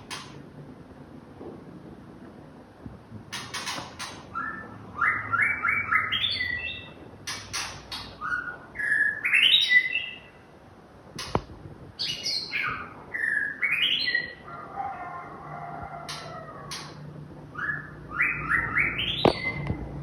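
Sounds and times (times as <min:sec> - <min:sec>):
harsh rattling bird notes: 0:03.3 - 0:08.5
bird singing whistled notes: 0:08.2 - 0:10.3, 0:17.6 - 0:19.6.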